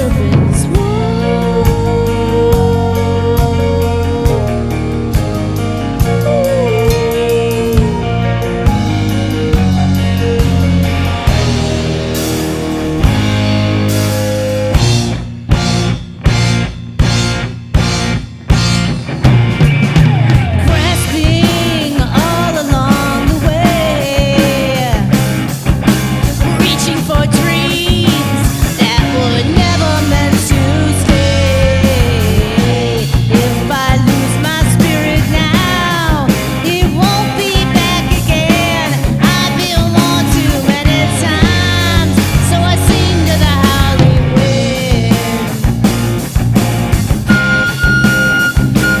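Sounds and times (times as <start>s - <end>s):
instrumental rock ballad: 0.0s - 49.0s
drum hits: 9.6s - 49.0s
flute melody: 47.3s - 49.0s.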